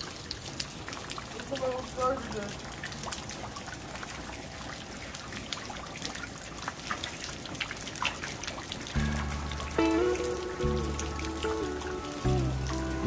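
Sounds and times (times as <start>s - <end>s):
drops ticking: 0.0s - 13.0s
rain falling and trickling: 0.0s - 13.0s
low steady musical tone: 9.0s - 13.0s.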